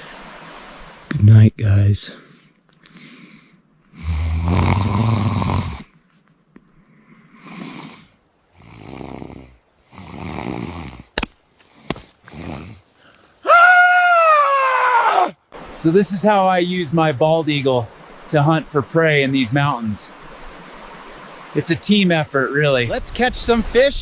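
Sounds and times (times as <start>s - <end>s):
person snoring: 4.0s - 5.9s
loud long pitched call: 13.5s - 15.4s.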